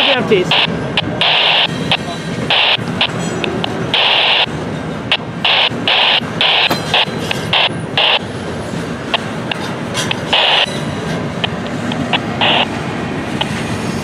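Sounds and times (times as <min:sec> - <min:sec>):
freight train rumbling past: 0:00.0 - 0:14.0
short harsh noise bursts: 0:09.1 - 0:12.8.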